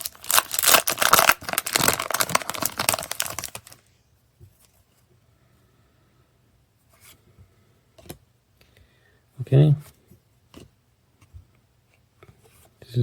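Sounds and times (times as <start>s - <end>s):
foil wrapper crinkling: 0.0s - 3.8s.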